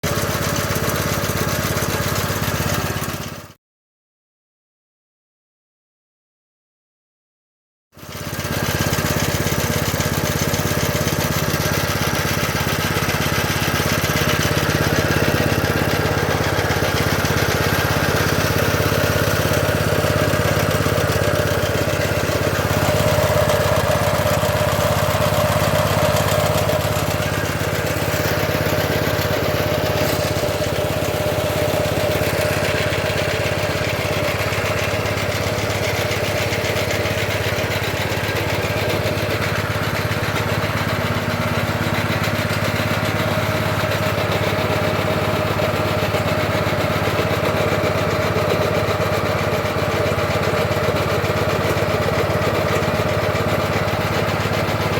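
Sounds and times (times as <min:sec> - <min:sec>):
motor running: 0:08.3 - 0:47.9.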